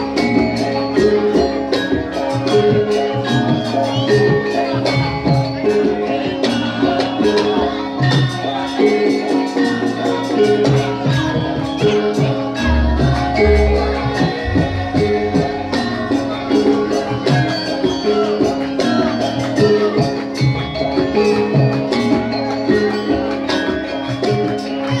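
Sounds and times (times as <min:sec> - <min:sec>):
heavy low drum: 0:12.6 - 0:17.5
ensemble music: 0:12.7 - 0:16.4.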